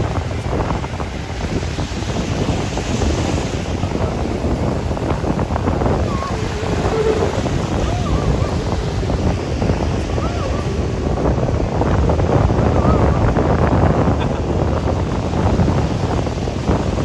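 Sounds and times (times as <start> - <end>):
ocean surf: 0.0 - 17.0
wind buffeting microphone: 0.0 - 17.0
wavering voice: 5.5 - 11.8.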